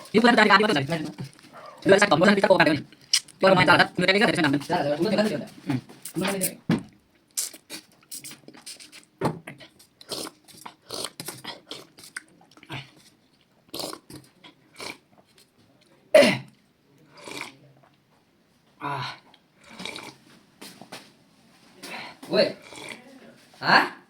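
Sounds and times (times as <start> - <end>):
chewing and lip-smacking: 7.1 - 14.2.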